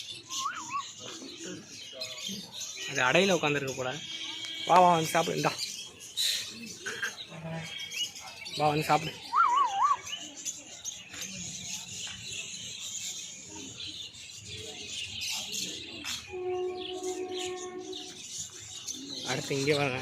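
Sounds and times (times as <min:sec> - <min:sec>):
small birds chirping: 0:00.0 - 0:20.0
warbling bird call: 0:09.2 - 0:10.2.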